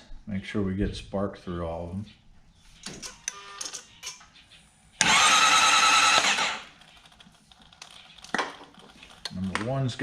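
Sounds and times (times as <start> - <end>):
electric starter cranking engine: 5.0 - 6.8.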